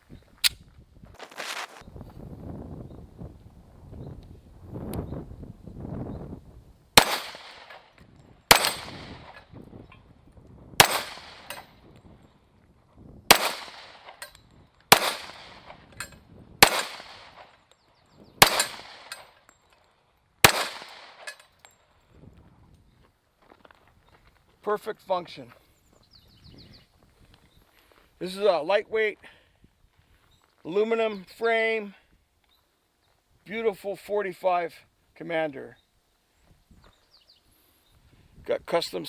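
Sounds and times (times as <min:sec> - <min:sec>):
pistol shots with echo: 0:07.0 - 0:07.8, 0:08.5 - 0:09.4, 0:10.8 - 0:11.6, 0:13.3 - 0:14.1, 0:14.9 - 0:15.8, 0:16.6 - 0:17.4, 0:18.4 - 0:19.2, 0:20.4 - 0:21.3.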